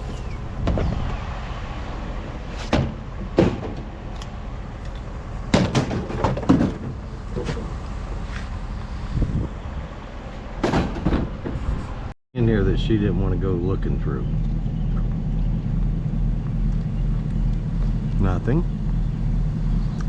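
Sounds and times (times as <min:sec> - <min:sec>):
vehicle rumbling: 0:00.0 - 0:20.0
sharp knocks and clunks: 0:02.6 - 0:07.7, 0:10.6 - 0:11.8.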